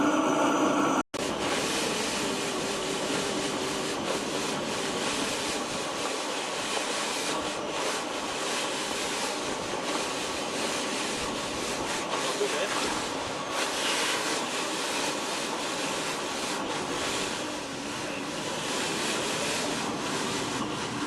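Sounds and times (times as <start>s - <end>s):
vacuum cleaner motor whining: 0.0s - 21.0s.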